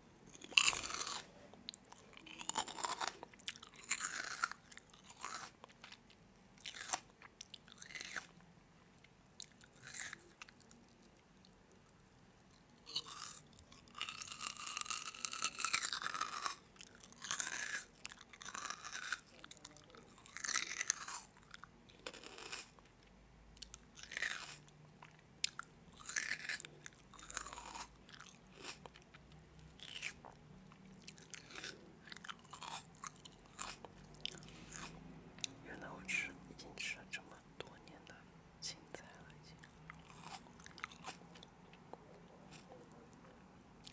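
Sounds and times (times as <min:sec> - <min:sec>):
crunchy food chewing: 0:00.3 - 0:08.4, 0:09.0 - 0:36.3, 0:39.0 - 0:43.9.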